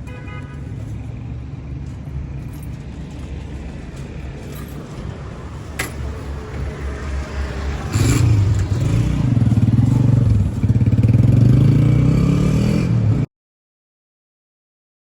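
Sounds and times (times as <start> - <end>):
vehicle engine running: 0.7 - 12.2.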